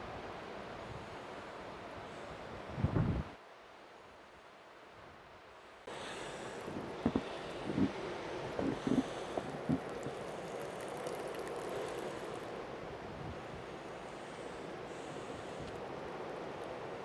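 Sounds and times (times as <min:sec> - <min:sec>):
ocean surf: 0:05.9 - 0:17.0.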